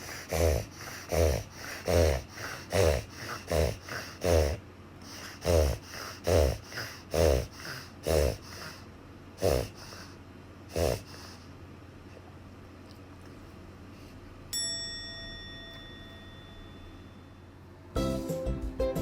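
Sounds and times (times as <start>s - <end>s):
dog reverse sneezing snorts: 0.0s - 8.8s, 9.4s - 11.4s
dog breathing softly: 0.0s - 10.2s, 10.8s - 11.6s.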